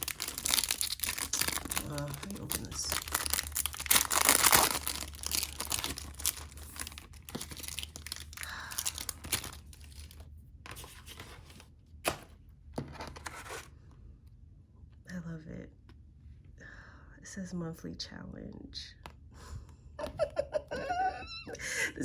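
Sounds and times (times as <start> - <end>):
package tearing and crinkling: 0.0 - 11.4
packaging rustling: 0.0 - 13.7.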